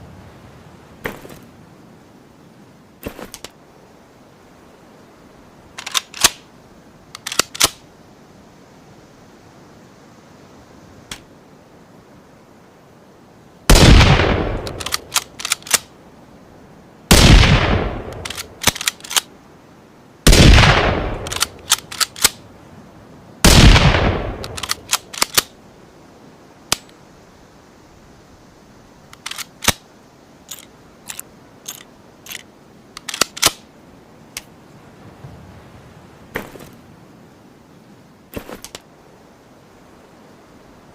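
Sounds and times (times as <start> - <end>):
rifle bolt clicks: 5.8 - 6.4, 7.2 - 7.8, 14.6 - 15.9, 18.1 - 19.3, 21.2 - 22.4, 24.4 - 25.5, 29.1 - 29.8, 33.0 - 33.6
rifle shots: 13.7 - 15.8, 17.1 - 19.0, 20.3 - 22.4, 23.5 - 25.5.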